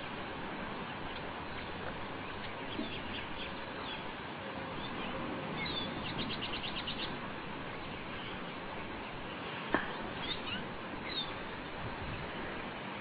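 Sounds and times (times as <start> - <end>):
birds chirping: 0.0 - 12.7
background hiss: 0.0 - 13.0.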